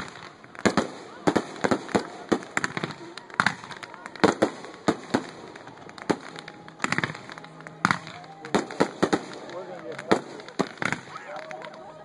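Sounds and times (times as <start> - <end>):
fireworks bangs and pops: 0.0 - 12.0
fireworks crackling: 0.0 - 12.0.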